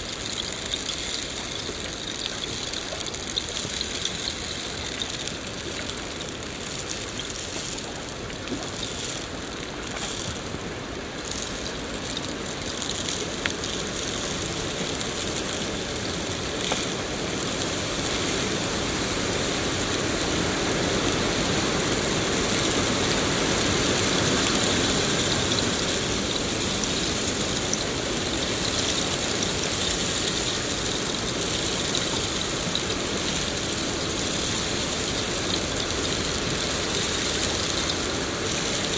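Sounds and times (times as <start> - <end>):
faint rain patter: 0.0 - 38.9
rain hissing: 0.0 - 38.9.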